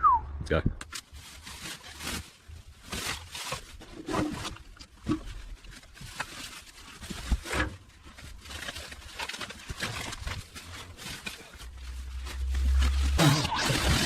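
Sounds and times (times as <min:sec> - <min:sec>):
brush rustling and crackling: 0:00.8 - 0:14.0.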